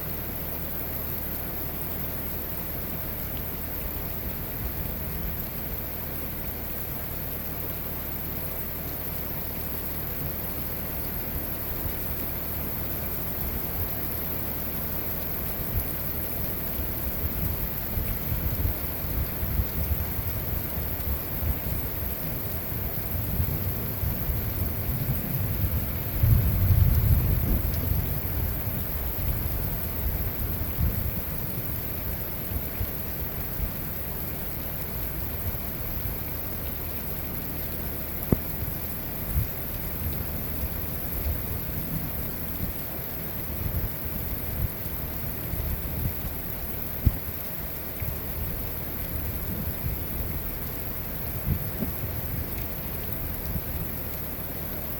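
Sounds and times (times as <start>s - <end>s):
heavy rain downpour: 0.0s - 54.9s
low rumble of thunder: 15.3s - 36.6s, 38.1s - 54.8s.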